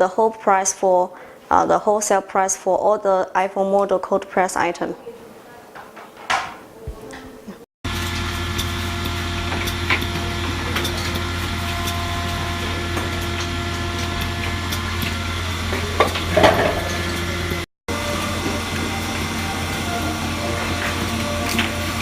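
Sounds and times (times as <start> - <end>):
machinery humming: 7.9 - 22.0.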